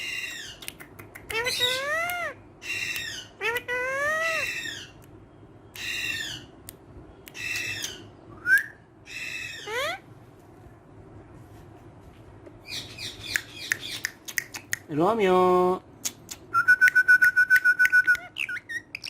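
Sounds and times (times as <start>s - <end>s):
parrot squawking: 0.0s - 0.6s, 1.3s - 5.0s, 5.8s - 6.5s, 7.3s - 8.1s, 9.0s - 10.1s, 18.1s - 19.0s.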